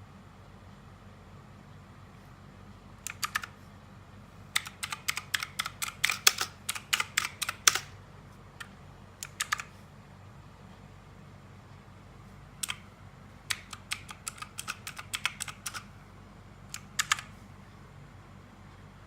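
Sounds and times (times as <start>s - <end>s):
mechanical keyboard typing: 3.0s - 3.6s, 4.5s - 8.0s, 8.6s - 9.8s, 12.6s - 15.9s, 16.7s - 17.3s.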